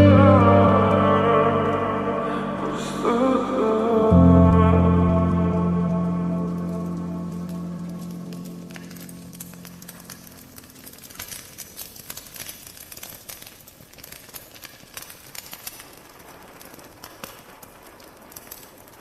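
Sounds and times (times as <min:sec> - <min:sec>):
held music note: 0:00.0 - 0:10.1
sharp clicks and crackles: 0:06.4 - 0:19.0.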